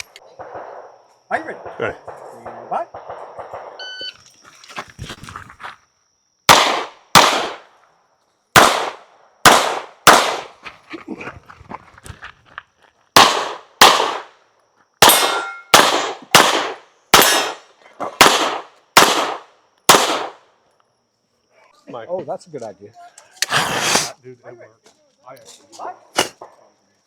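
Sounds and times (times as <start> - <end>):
rapid gunshots: 6.5 - 7.6, 8.6 - 10.5, 13.2 - 14.3, 15.0 - 17.6, 18.2 - 20.4.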